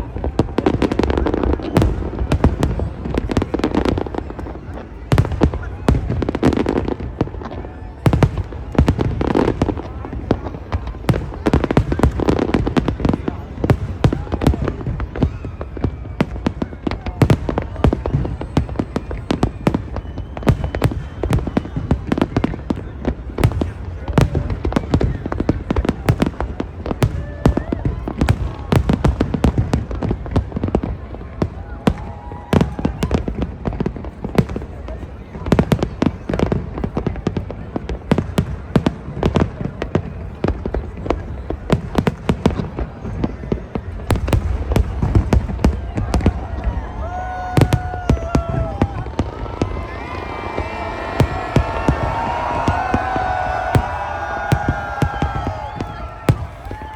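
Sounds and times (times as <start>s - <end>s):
fireworks bangs: 0.0s - 56.9s.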